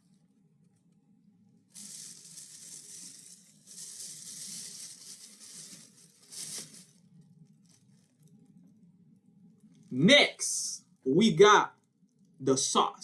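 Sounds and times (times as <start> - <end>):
plastic and foil rustling: 1.7 - 8.8.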